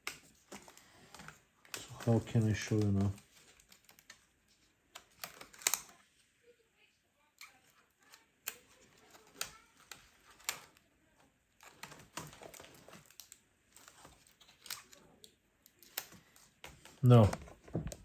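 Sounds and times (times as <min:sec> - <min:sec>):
laptop keyboard plastic clicks: 0:05.0 - 0:06.0, 0:07.4 - 0:10.8, 0:11.6 - 0:18.0.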